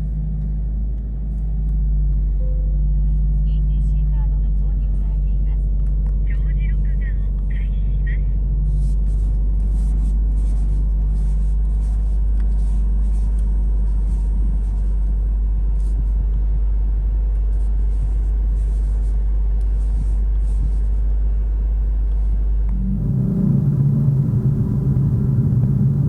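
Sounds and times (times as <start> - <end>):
car engine rumbling: 22.7 - 26.0.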